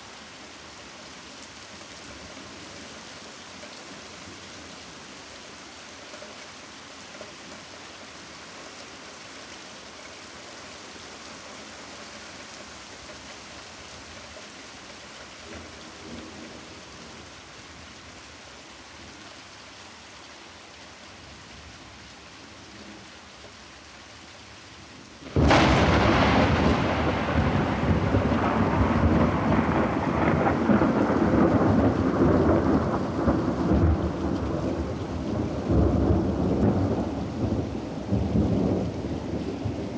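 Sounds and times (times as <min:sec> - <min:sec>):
steady rain falling: 0:00.0 - 0:39.9
thunder rumbling: 0:25.2 - 0:39.9.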